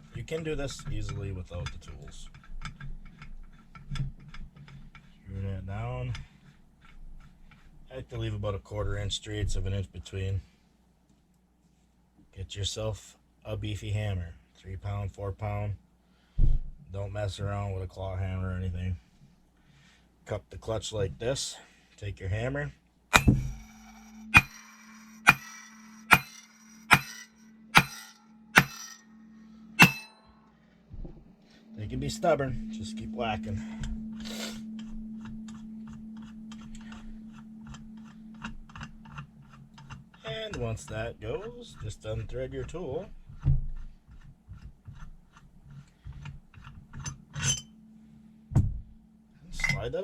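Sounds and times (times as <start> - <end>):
metal clatter: 23.1 - 29.0, 29.8 - 30.2
heavy knock: 23.2 - 23.6
hammer striking metal bolt: 23.2 - 29.0, 29.8 - 30.2.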